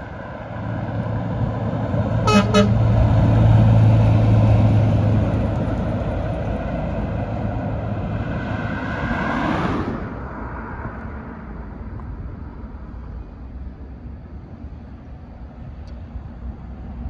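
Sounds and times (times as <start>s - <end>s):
heavy truck driving past: 0.0s - 11.8s.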